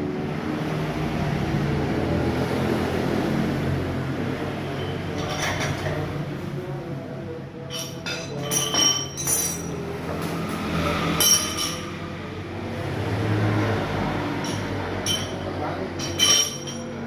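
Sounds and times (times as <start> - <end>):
metal tools clinking: 7.7 - 9.8, 11.2 - 11.9, 14.4 - 17.0.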